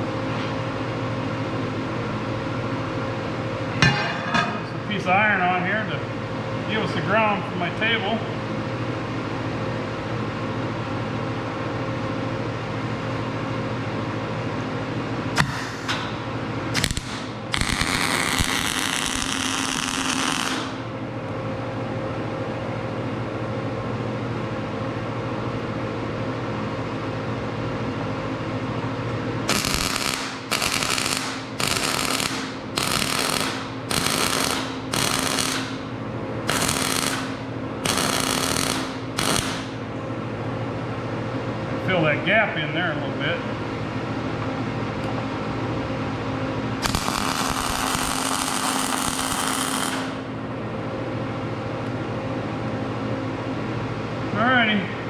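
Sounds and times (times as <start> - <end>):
steady hum: 0.0 - 55.0
welding arc crackling: 15.4 - 20.9, 29.5 - 39.8, 46.8 - 50.3.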